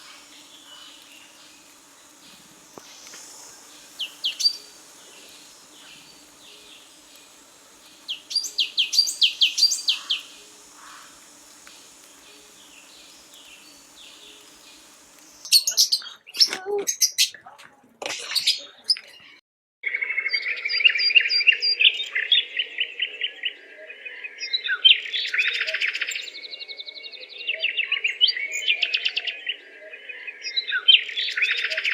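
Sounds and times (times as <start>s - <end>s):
faint bird calls: 0.0s - 16.5s
bird chirping: 0.0s - 17.4s.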